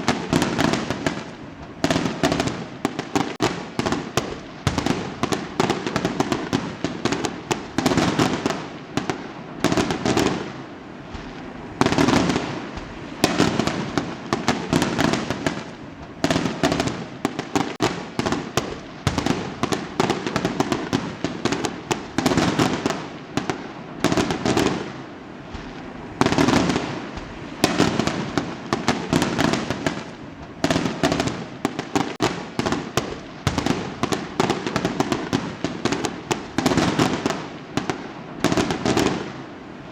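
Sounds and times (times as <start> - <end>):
fireworks bursting and crackling: 0.0 - 39.9.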